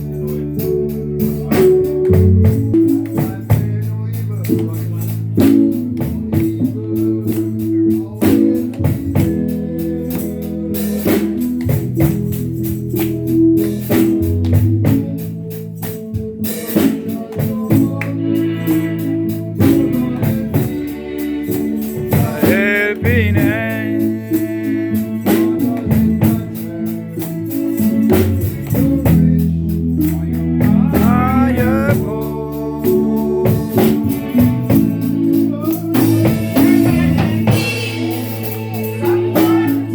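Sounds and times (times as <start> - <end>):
worship band playing: 0.0 - 39.9
lead voice or instrument: 18.2 - 27.1, 28.6 - 34.5.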